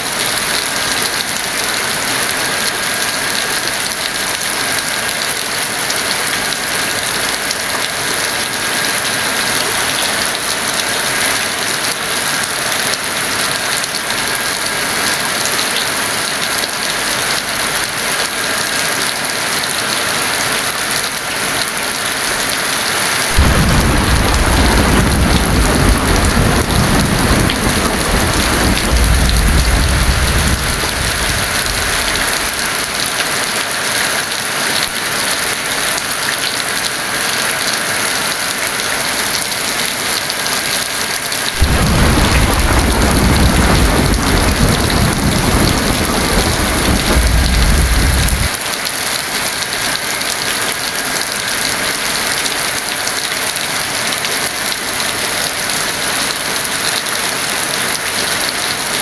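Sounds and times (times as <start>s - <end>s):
heavy rain: 0.0s - 59.0s
thunder rumble: 23.3s - 33.0s, 41.6s - 48.6s.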